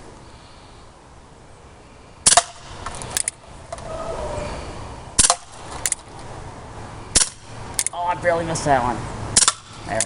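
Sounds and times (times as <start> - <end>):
air pistol pops: 9.4 - 9.7.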